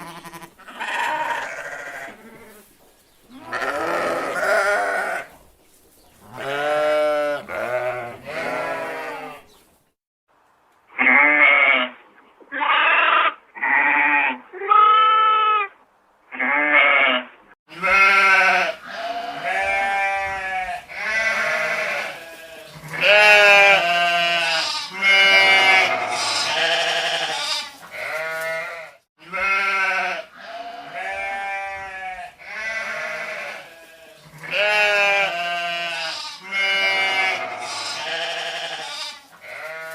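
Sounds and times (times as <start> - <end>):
sheep bleating: 0.0 - 2.7, 3.3 - 5.3, 6.3 - 9.5, 16.4 - 39.9.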